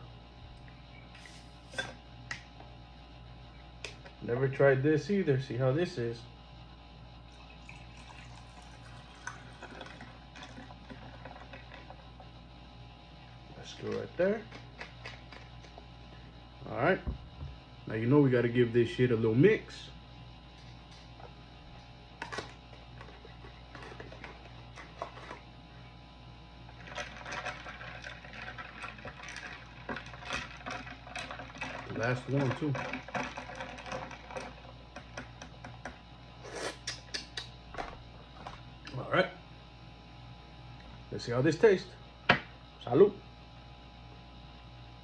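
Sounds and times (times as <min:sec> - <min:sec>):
soda fizzing as poured: 0:07.3 - 0:11.6
drink stirred in a cup: 0:07.3 - 0:12.4, 0:22.2 - 0:25.4, 0:26.7 - 0:37.0.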